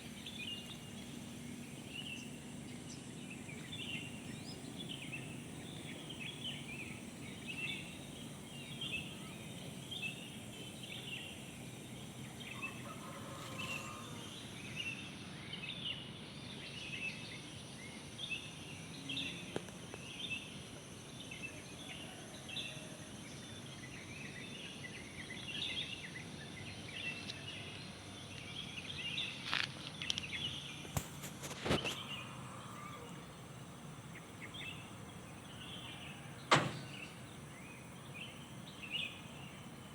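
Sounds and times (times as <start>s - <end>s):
wild birds singing: 0.0s - 39.9s
low outdoor rumble: 27.8s - 39.9s
sharp knocks: 36.5s - 37.1s.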